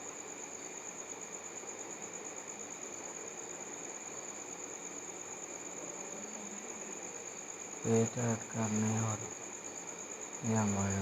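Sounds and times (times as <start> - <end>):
high-pitched insect trill: 0.0 - 11.0.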